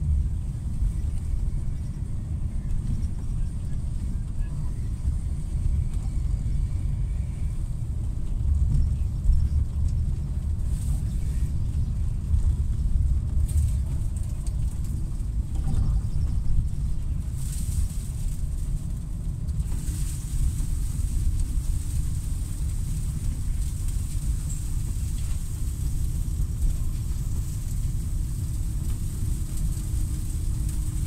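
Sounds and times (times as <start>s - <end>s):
wind buffeting microphone: 0.0s - 31.0s
hiss of wind-driven snow: 16.4s - 31.0s.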